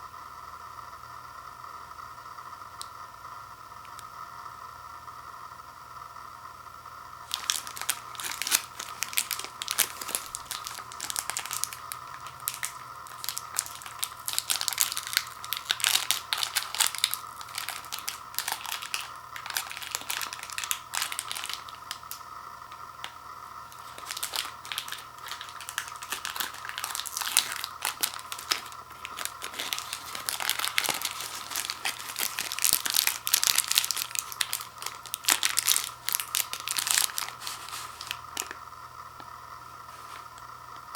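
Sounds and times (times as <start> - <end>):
faint steady hum: 0.0 - 40.9
plastic wrapper crinkling and tearing: 7.2 - 38.6.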